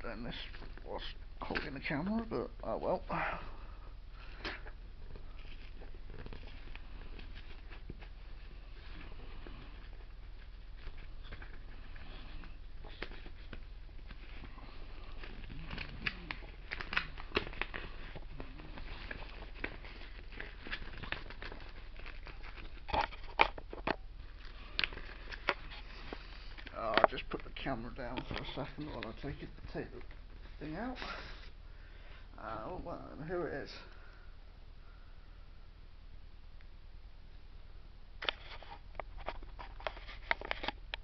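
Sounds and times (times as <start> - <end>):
packaging crinkling: 3.4 - 31.4
packaging snapping: 10.7 - 30.1.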